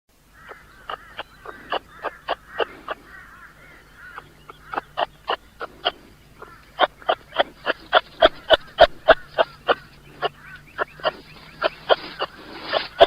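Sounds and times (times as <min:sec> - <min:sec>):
animal's short sharp calls: 0:04.7 - 0:13.0.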